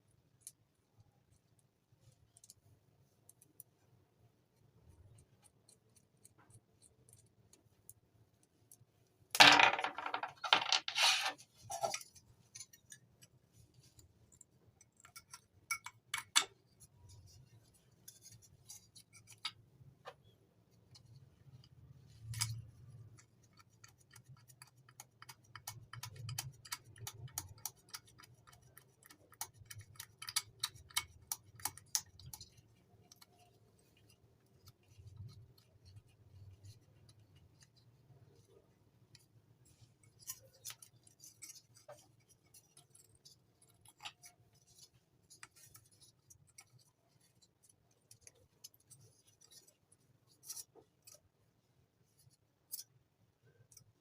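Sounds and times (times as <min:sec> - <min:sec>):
small hard parts clicking: 0:22.2 - 0:36.8.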